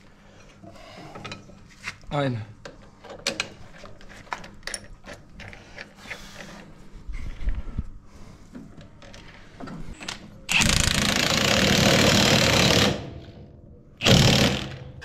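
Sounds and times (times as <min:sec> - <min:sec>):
impact wrench hammering: 0:14.0 - 0:15.0.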